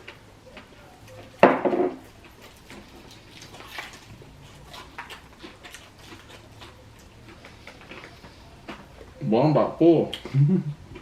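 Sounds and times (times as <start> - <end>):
person chewing fried chicken: 2.0 - 9.2, 10.1 - 11.0
small crunches and clicks: 2.1 - 9.2.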